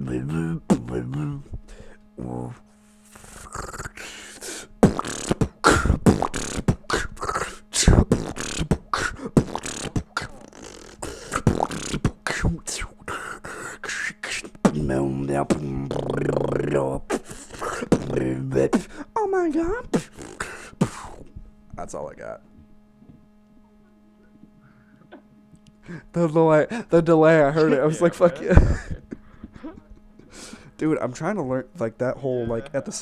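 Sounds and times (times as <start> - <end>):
beatboxing percussion: 0.0 - 19.0, 19.7 - 21.4
hummed bass tone: 0.0 - 26.3.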